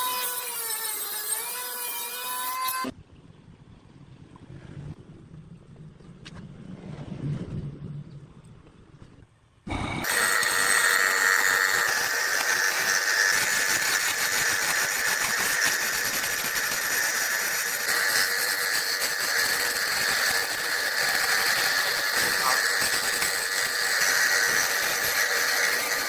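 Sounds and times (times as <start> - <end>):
woodworking power tool running: 9.8 - 26.0.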